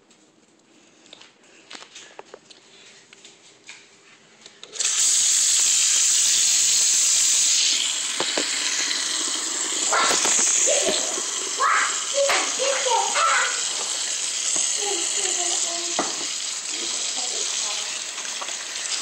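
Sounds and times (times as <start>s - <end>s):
water running into a sink: 4.8s - 19.0s.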